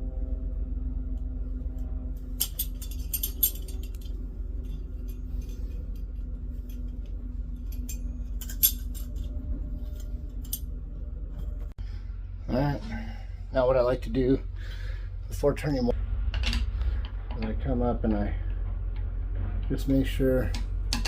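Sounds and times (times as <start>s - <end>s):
low hum: 0.0s - 21.0s
metal tools clinking: 2.3s - 10.7s.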